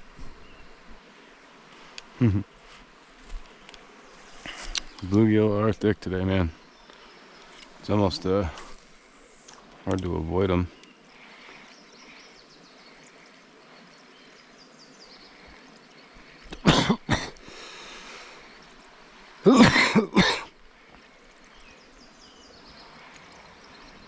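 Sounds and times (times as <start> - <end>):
man clearing throat and coughing: 2.2 - 2.4, 16.6 - 17.4, 19.4 - 20.5.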